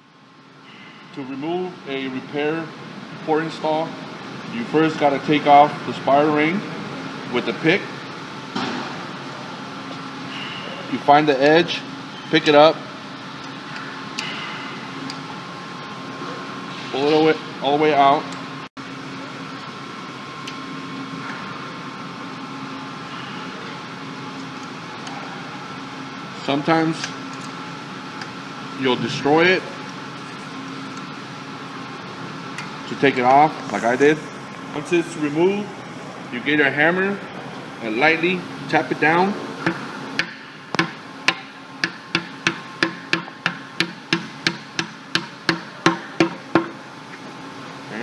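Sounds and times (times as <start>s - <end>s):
steady mechanical hum: 0.0s - 48.0s
hammer tapping metal: 39.6s - 46.7s.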